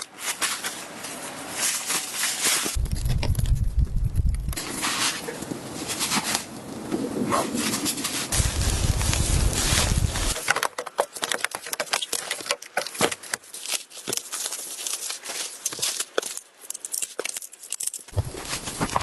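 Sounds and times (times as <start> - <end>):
sharp clicks and crackles: 2.7 - 4.7, 8.3 - 19.0
low wind rumble: 2.8 - 10.4, 18.2 - 19.0.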